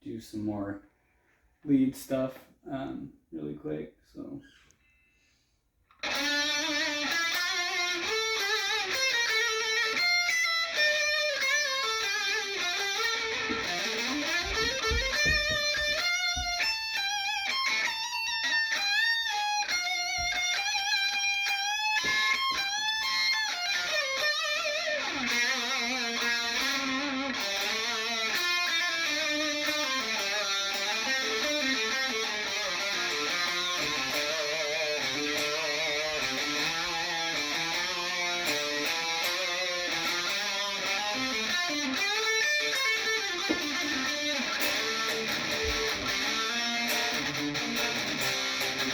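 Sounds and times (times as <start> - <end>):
electric guitar lead lines: 6.0 - 48.9.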